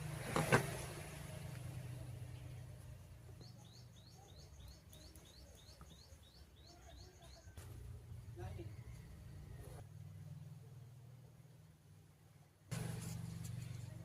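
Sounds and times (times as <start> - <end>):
small bird chirping: 2.0 - 9.8.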